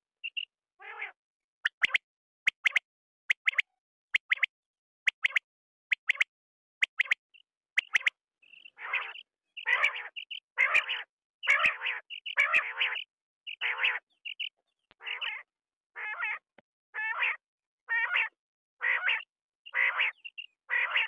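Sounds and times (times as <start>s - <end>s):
quail calling: 0.2s - 4.5s, 7.8s - 21.0s.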